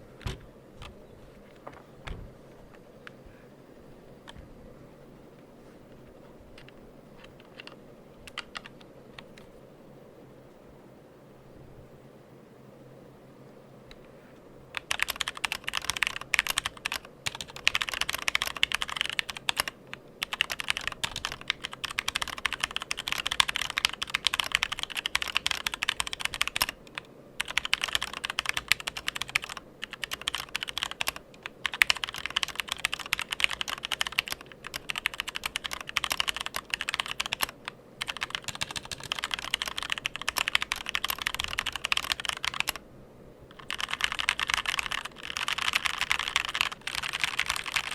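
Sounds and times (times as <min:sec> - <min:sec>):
typing on mechanical keyboard: 0:07.3 - 0:09.3, 0:14.8 - 0:42.8, 0:43.5 - 0:47.9.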